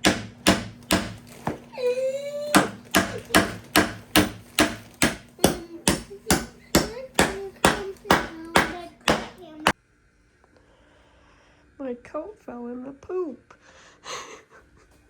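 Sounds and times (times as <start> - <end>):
rhythmic knocking: 2.5 - 9.7.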